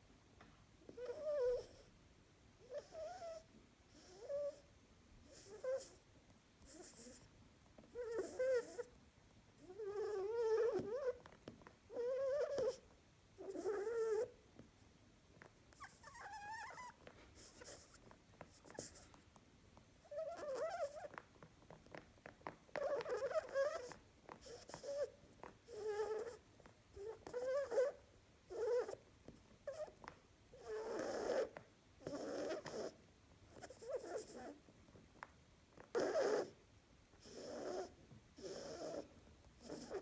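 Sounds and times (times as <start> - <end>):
rabbit snoring and vocalizing: 0.8 - 2.0, 2.6 - 9.0, 9.6 - 11.3, 11.9 - 14.4, 15.4 - 19.2, 20.0 - 34.7, 35.7 - 40.0.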